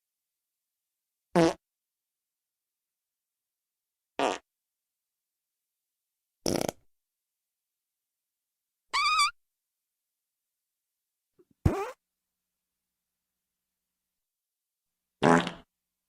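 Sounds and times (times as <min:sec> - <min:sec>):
fart sound effects: 0:01.4 - 0:01.6, 0:04.2 - 0:04.4, 0:06.4 - 0:06.8, 0:11.6 - 0:12.0, 0:15.2 - 0:15.7.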